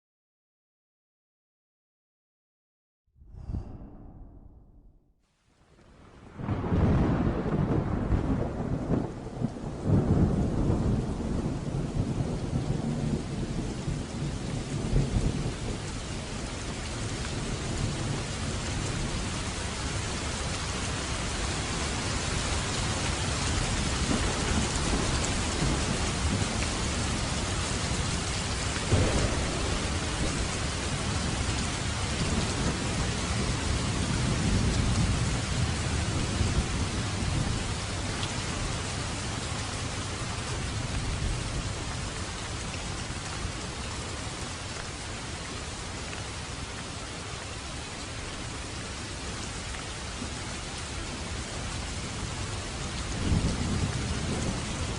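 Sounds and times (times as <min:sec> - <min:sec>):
low rolls of thunder: 0:03.2 - 0:05.0, 0:06.2 - 0:38.8, 0:50.2 - 0:54.9
steady rain falling: 0:05.4 - 0:54.9
sharp thunder clap: 0:06.4 - 0:12.9, 0:28.8 - 0:31.3.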